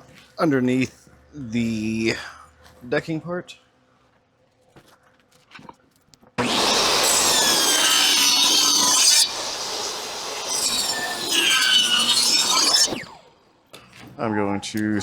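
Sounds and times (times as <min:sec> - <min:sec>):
power saw ripping wood: 0:06.4 - 0:13.3.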